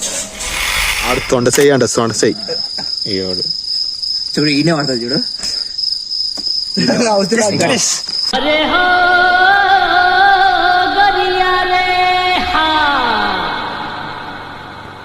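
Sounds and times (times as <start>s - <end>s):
high-pitched insect buzz: 0.0s - 8.3s.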